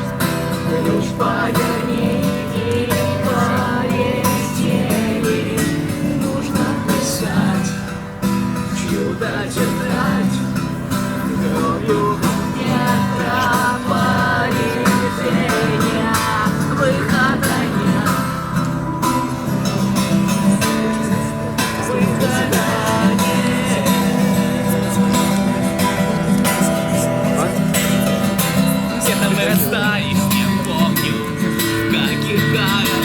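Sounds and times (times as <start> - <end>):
strummed acoustic guitar: 0.0 - 33.0
person singing: 8.8 - 33.0.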